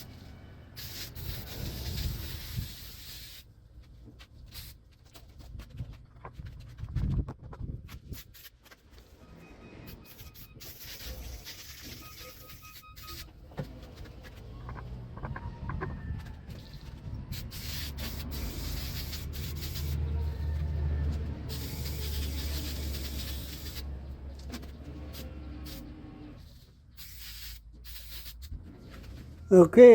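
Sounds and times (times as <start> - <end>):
spray hissing: 0.8 - 3.5, 10.1 - 13.2, 17.3 - 20.5, 21.5 - 23.9, 25.1 - 28.5.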